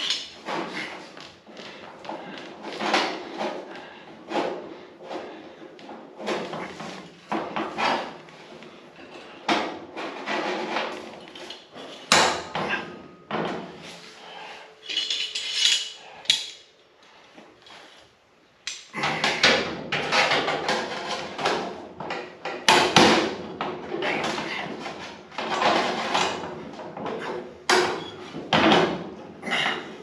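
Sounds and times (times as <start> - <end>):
metal tools clanking: 14.8 - 16.7.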